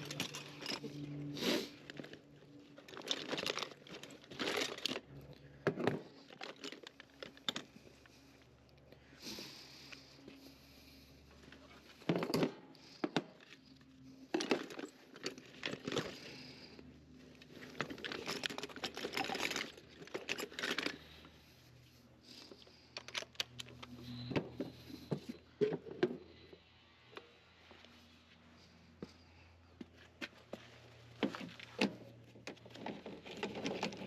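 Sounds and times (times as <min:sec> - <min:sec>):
crinkly rustling: 0:01.8 - 0:05.1, 0:06.0 - 0:08.3, 0:12.8 - 0:21.3
handling clicks and knocks: 0:01.9 - 0:08.1, 0:12.0 - 0:16.4, 0:17.4 - 0:21.1, 0:22.5 - 0:26.4.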